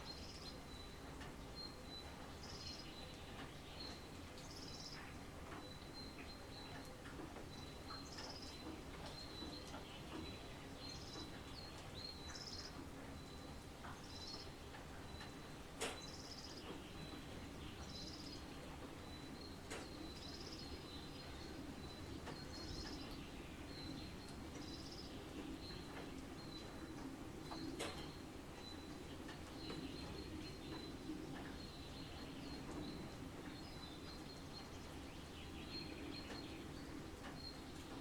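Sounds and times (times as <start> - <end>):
songbird chirping: 15.1 - 38.0.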